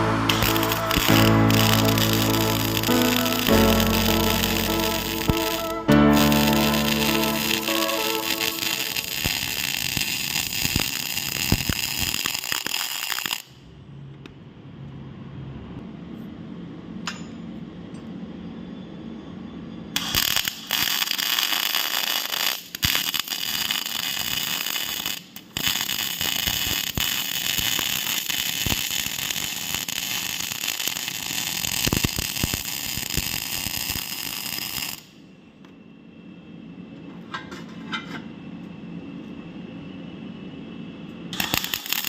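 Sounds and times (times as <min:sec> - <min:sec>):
low hum: 0:00.0 - 0:09.9
arc welding crackling hiss: 0:00.0 - 0:13.6, 0:20.0 - 0:35.2, 0:41.4 - 0:42.0.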